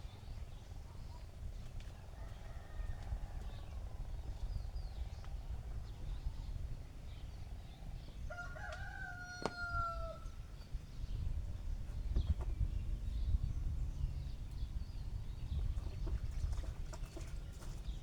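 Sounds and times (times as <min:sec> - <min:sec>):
rooster crowing: 0:02.2 - 0:03.7, 0:08.3 - 0:10.3.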